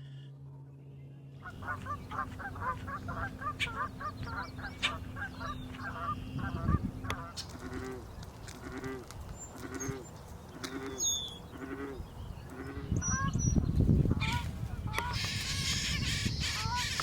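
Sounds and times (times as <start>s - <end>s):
low honking bird call: 1.5s - 8.1s
nestlings chattering: 1.5s - 8.8s, 9.4s - 17.0s.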